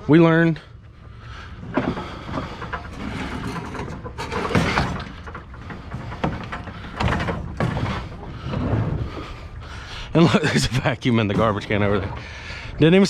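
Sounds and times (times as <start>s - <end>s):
scrap clattering and scraping: 1.0s - 9.9s.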